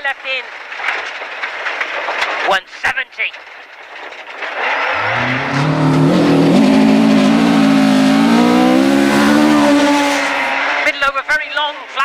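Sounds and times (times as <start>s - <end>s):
rally car engine at full throttle: 4.9s - 11.1s.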